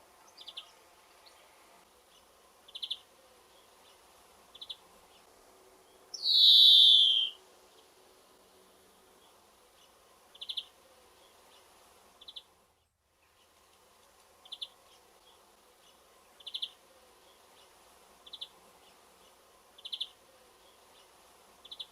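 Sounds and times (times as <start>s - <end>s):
greenfinch trilled call: 6.2s - 7.4s.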